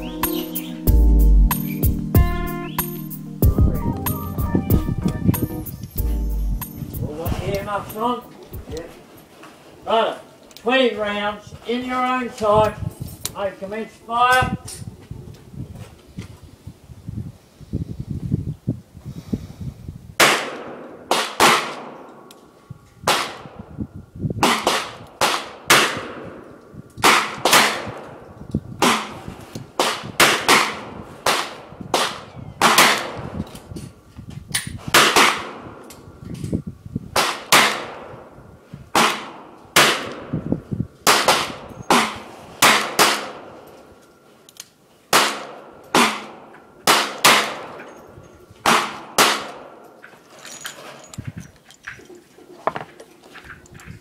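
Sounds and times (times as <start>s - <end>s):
handgun shots with echo: 27.0s - 28.2s, 29.8s - 33.3s, 37.2s - 38.2s, 41.1s - 43.6s, 45.1s - 47.8s, 48.6s - 49.8s.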